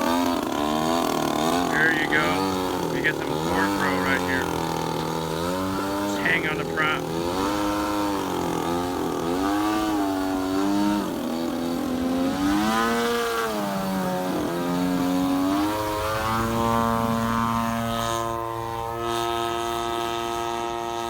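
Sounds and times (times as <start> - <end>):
model plane engine revving: 7.0 - 18.1.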